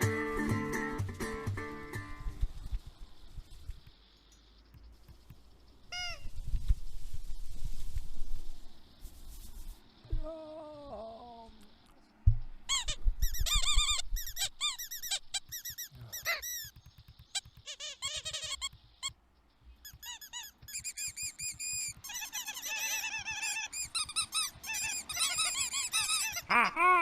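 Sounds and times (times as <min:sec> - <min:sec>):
cartoon birds chirping: 0:04.7 - 0:06.4, 0:12.7 - 0:27.0.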